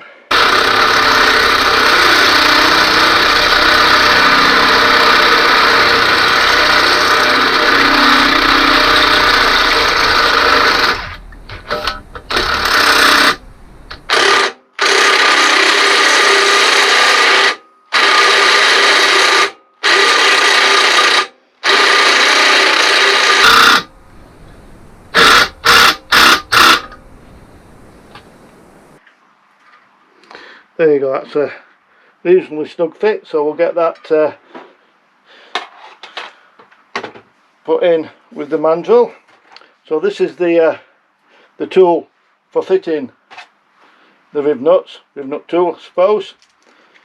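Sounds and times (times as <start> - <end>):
power drill boring metal: 0.3 - 28.3.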